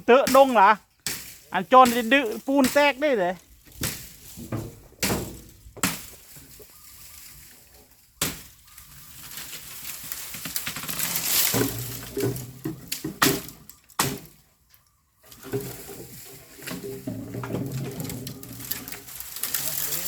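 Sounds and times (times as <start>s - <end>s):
bamboo rustling and cracking: 0.0s - 20.0s
sharp knocks cutting bamboo: 0.2s - 3.0s, 3.7s - 6.2s, 8.2s - 8.6s, 12.9s - 14.4s.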